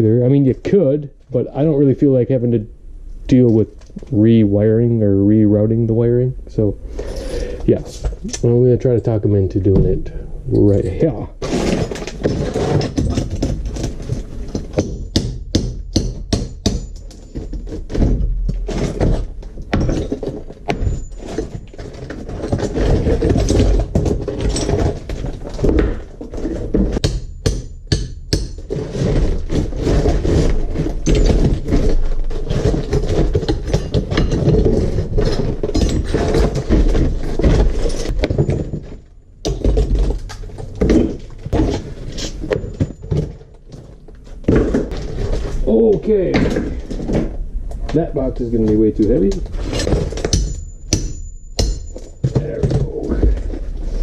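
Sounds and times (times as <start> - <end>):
tile and mortar crumbling: 10.7 - 15.2, 15.8 - 27.2, 28.2 - 47.4, 49.2 - 54.0.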